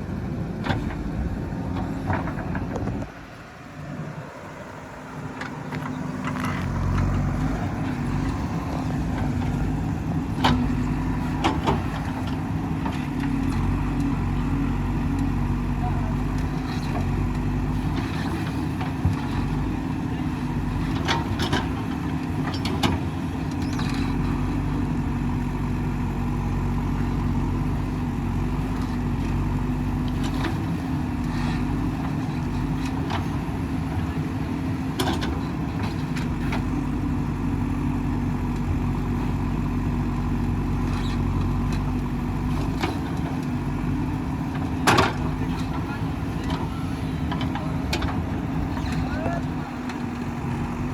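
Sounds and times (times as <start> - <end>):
diesel engine running under load: 0.0 - 50.9.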